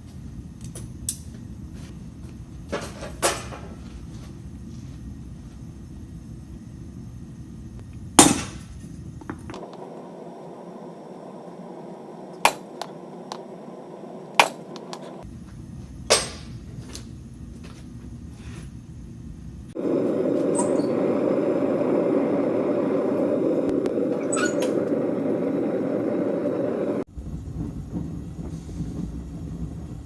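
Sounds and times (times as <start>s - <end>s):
steady low rumble: 9.6s - 15.9s, 19.3s - 30.0s
hammer striking steel: 12.4s - 13.5s, 14.3s - 15.2s.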